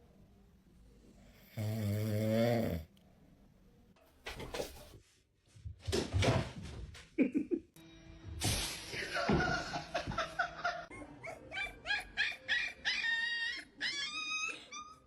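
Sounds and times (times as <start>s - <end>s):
person snoring: 1.4s - 2.9s.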